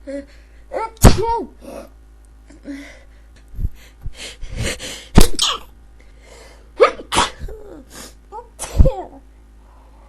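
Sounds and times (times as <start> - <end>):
woman sneezing: 6.8 - 8.9.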